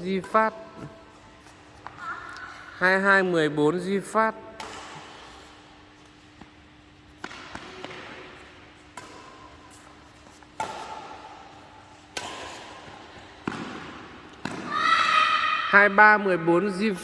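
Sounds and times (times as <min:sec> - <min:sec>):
rackets hitting shuttlecock: 0:04.5 - 0:05.5, 0:06.4 - 0:14.9.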